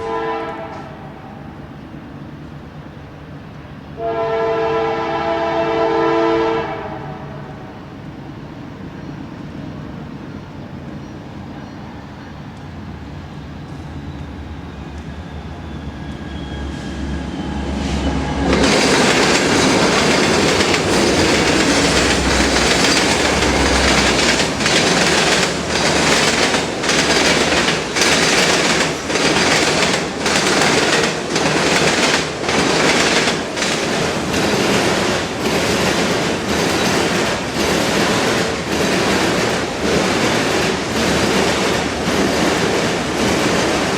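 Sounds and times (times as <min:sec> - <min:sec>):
diesel locomotive rumble: 0:06.7 - 0:38.0
train wheels clickety-clack: 0:12.3 - 0:43.9
freight cars rolling: 0:12.5 - 0:43.9.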